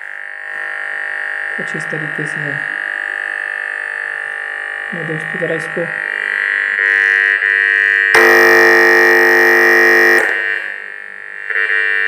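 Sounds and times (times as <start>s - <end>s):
chord of steady pitches: 8.2s - 10.4s
buzzer-like electronic tone: 8.2s - 10.6s.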